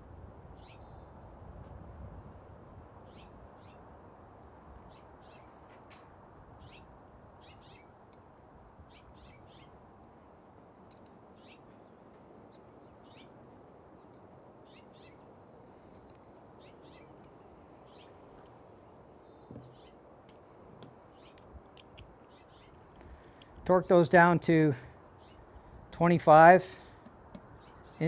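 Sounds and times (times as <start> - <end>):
low background hiss: 2.4 - 27.0
faint bird chirps: 14.6 - 17.2, 19.1 - 20.0.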